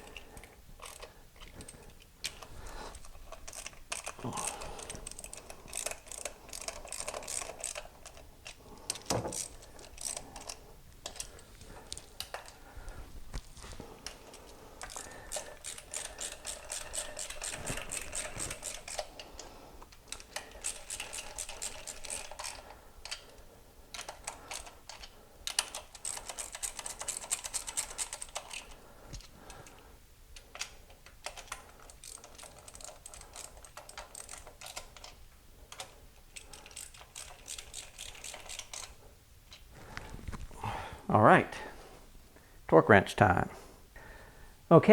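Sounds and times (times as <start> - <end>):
hand ratchet clicking: 0.0 - 12.6, 14.0 - 29.3, 30.4 - 39.0.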